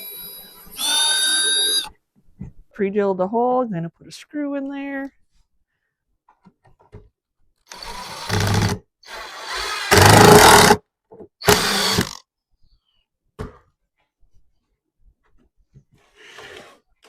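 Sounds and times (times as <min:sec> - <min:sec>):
power drill driving screw: 0:00.2 - 0:01.9, 0:07.7 - 0:10.8, 0:11.4 - 0:12.2.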